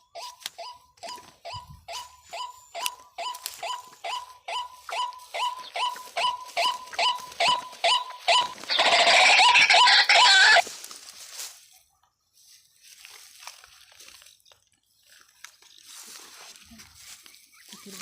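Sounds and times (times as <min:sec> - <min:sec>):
waterhen calling harsh notes: 0:00.1 - 0:10.6.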